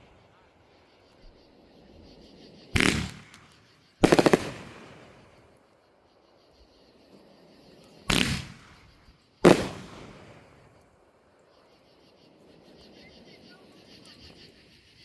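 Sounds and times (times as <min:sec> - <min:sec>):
firework explosions: 0:02.7 - 0:05.6, 0:07.9 - 0:11.2.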